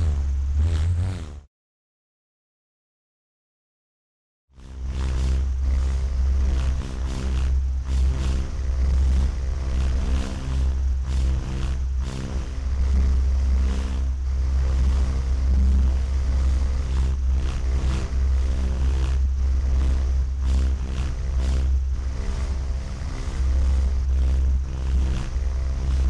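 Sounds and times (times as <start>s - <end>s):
vehicle engine rumbling: 0.0s - 1.5s.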